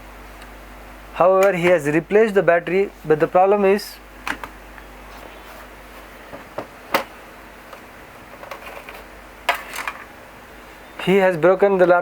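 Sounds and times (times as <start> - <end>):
faint room hum: 0.0 - 12.0.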